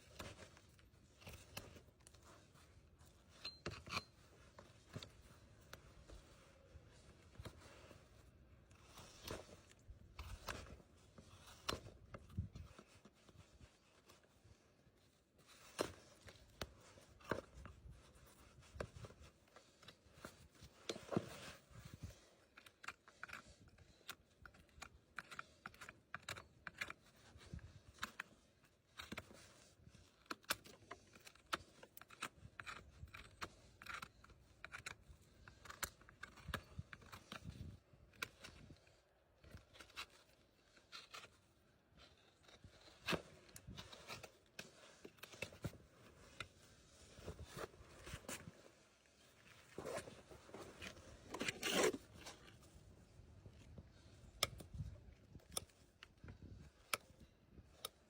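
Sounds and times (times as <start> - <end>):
hoof being cut and pared: 0.1 - 6.7, 15.6 - 38.8, 49.5 - 57.2.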